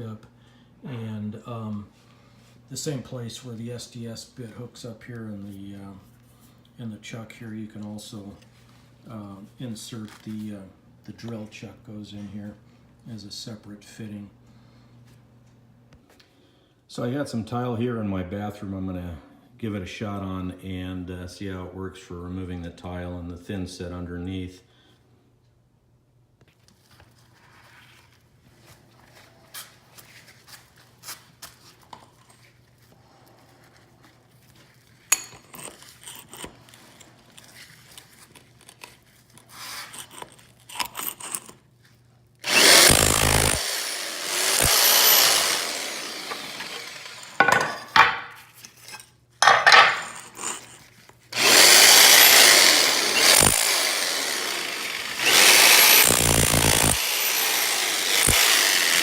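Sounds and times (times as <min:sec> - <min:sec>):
rotary hammer chipping tile: 0:42.5 - 0:47.3, 0:51.4 - 0:59.0.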